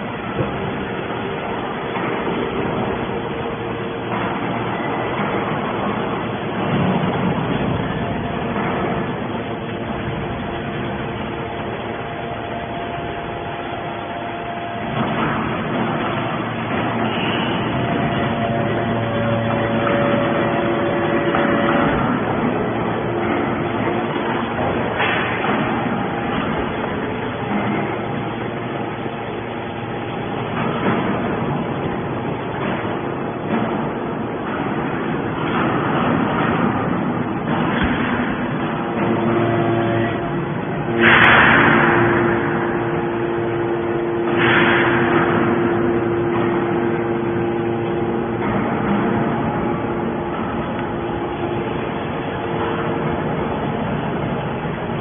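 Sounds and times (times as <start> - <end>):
hydraulic baler running: 0.0 - 55.0
pump motor hum: 0.0 - 55.0
rush of hydraulic noise: 40.8 - 48.2.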